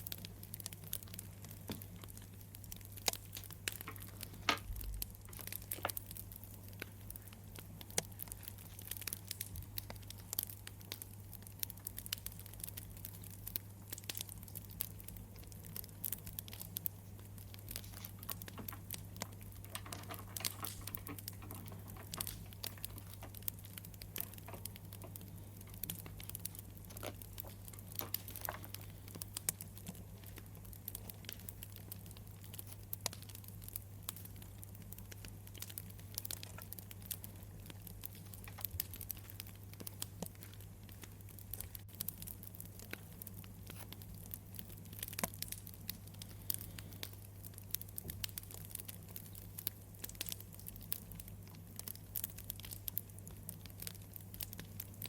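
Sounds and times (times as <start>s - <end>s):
wood fire crackling: 0.0s - 55.0s.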